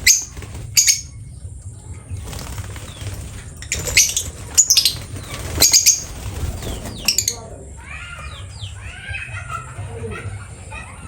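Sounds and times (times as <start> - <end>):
bird wings fluttering: 0.0 - 0.9, 2.2 - 7.3.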